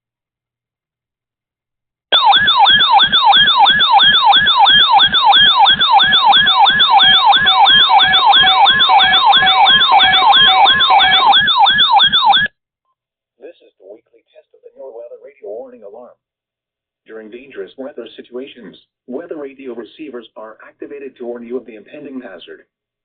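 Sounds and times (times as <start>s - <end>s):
electronic siren alert tone: 2.1s - 12.5s.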